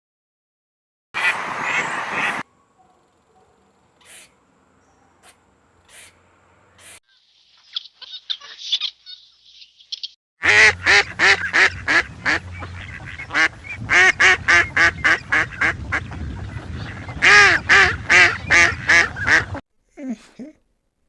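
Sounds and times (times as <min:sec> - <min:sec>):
bird calling rapidly: 0:01.2 - 0:10.2.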